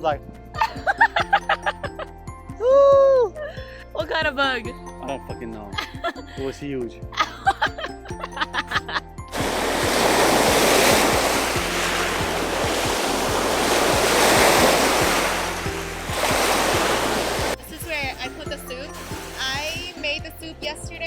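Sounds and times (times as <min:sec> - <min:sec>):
music with a steady beat: 0:00.0 - 0:21.0
loud rushing noise: 0:09.3 - 0:17.6.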